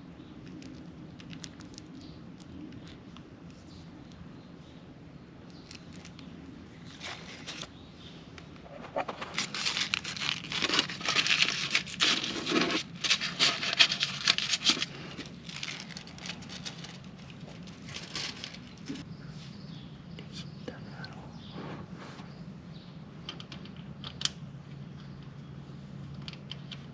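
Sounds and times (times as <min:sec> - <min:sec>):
paper or plastic crumpling: 0:00.6 - 0:02.0, 0:08.9 - 0:19.0.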